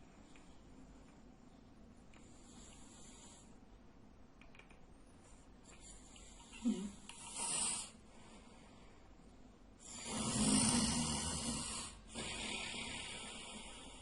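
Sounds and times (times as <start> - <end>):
man snoring: 9.8 - 14.0.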